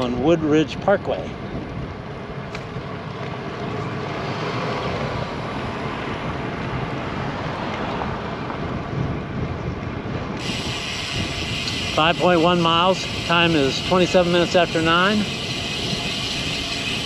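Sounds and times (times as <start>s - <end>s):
wind and road noise: 0.0s - 17.0s.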